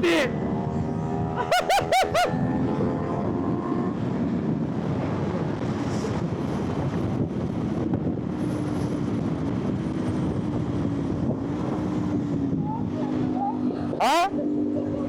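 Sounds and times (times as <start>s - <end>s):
wind rush on microphone: 2.2s - 14.0s.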